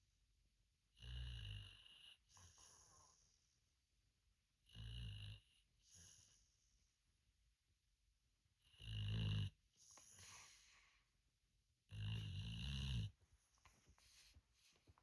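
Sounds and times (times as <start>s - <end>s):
soft breath: 2.4s - 3.6s, 9.8s - 11.2s, 13.3s - 15.0s
person snoring: 11.9s - 13.1s.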